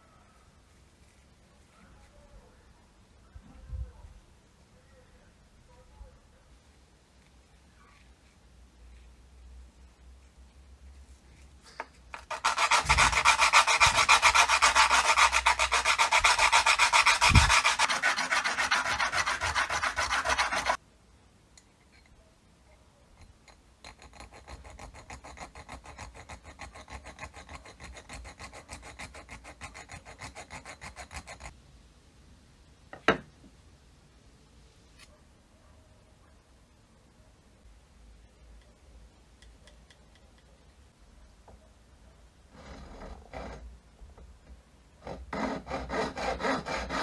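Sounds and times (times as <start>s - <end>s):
tool rasping on metal: 12.1s - 20.8s, 23.8s - 31.5s, 45.1s - 47.0s.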